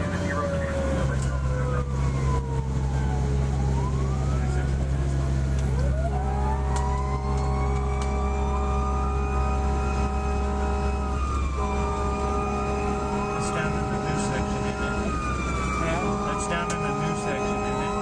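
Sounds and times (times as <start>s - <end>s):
fire engine siren wailing: 0.0s - 18.0s
second siren tone gliding: 0.0s - 18.0s
truck engine drone: 0.0s - 18.0s
steady blaring chord: 7.2s - 18.0s.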